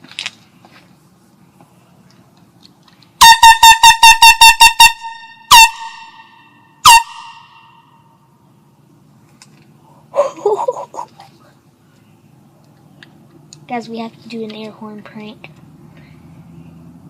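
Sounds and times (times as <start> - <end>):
canned air horn blasts: 3.2 - 7.7.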